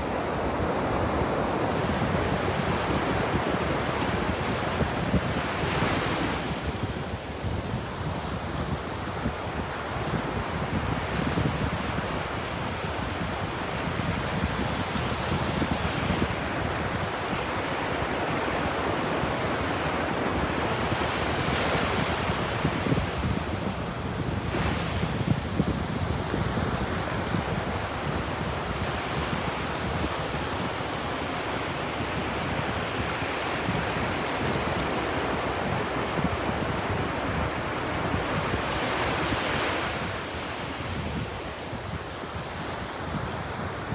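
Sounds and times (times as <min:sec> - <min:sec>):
ocean waves breaking on beach: 0:00.0 - 0:43.9.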